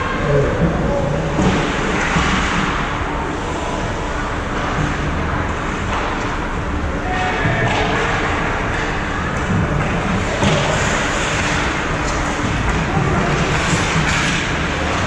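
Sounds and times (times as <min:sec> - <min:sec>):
indistinct voices: 0:00.0 - 0:04.5
steady noisy background: 0:00.0 - 0:15.0
hockey sticks and puck knocking: 0:07.2 - 0:15.0.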